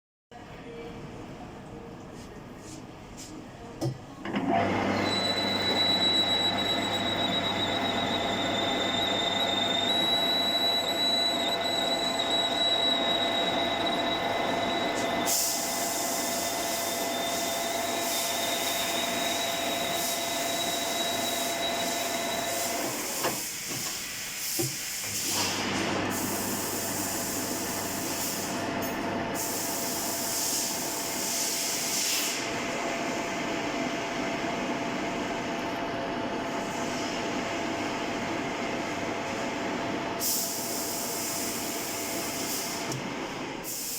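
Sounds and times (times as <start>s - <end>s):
metal lathe running: 4.7s - 23.0s.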